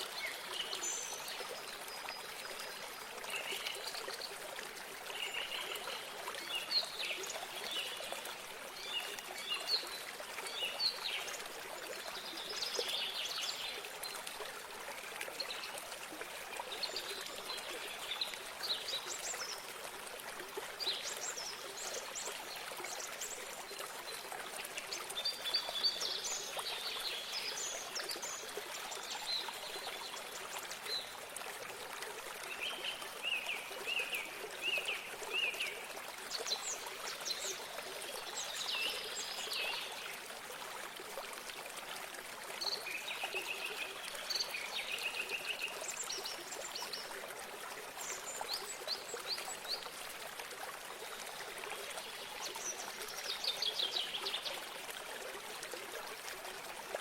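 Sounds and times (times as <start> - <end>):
stream running: 0.0 - 57.0.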